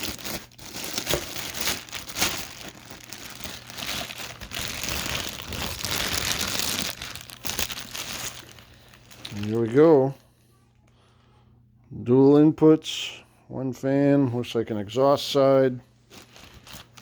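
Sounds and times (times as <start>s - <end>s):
packaging crinkling and rustling: 0.0s - 10.1s, 16.0s - 17.0s.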